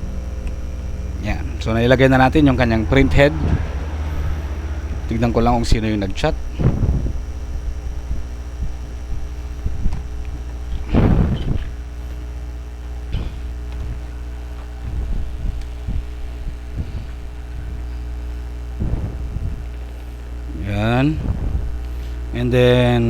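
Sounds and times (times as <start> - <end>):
low electrical hum: 0.0 - 23.0
bump or rustle: 2.4 - 20.4.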